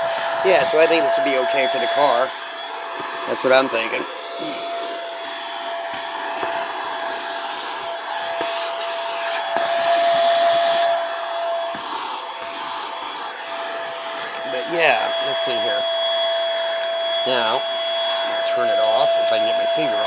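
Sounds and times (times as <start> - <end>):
handheld vacuum cleaner running: 0.0 - 20.0.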